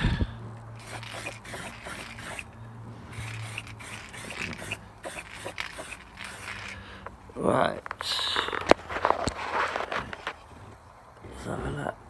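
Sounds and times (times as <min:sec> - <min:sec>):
steady low hum: 0:00.0 - 0:12.0
objects being rummaged through: 0:03.1 - 0:10.5.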